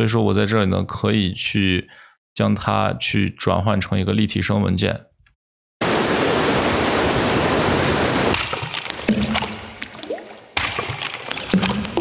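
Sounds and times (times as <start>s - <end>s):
steady rain hiss: 5.8s - 8.4s.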